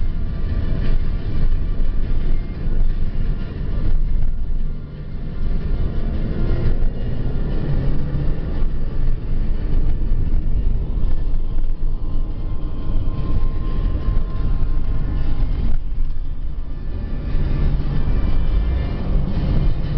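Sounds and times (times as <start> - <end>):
car engine and tyre rumble: 0.0 - 19.9.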